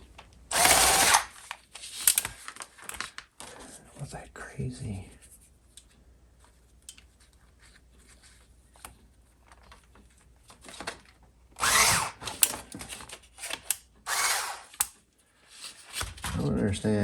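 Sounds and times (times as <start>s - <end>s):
power drill driving a screw: 0.5s - 1.4s, 11.6s - 12.6s, 13.4s - 15.0s.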